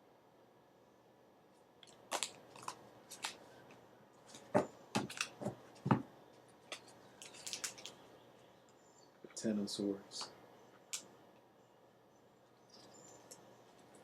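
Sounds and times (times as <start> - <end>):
soft rustling of cards: 1.6 - 11.2
cards clicking and flicking: 1.8 - 3.4, 4.3 - 5.6, 6.7 - 8.0.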